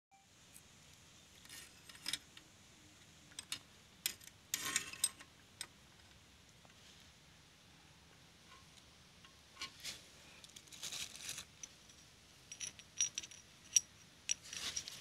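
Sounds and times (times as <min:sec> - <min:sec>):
metal tools clinking and rattling: 0:11.3 - 0:15.0.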